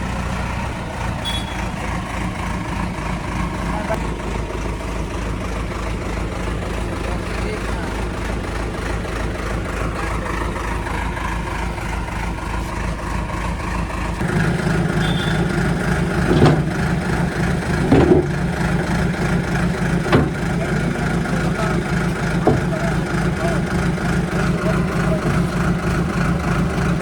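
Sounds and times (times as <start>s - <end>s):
diesel engine running: 0.0s - 27.0s
sharp knocks: 14.2s - 21.2s, 22.2s - 23.3s.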